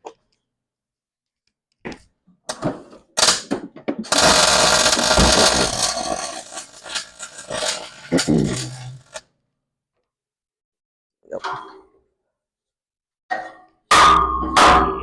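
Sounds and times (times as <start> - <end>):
sharp clicks and knocks: 4.1 - 7.7
welder crackling: 4.1 - 9.2.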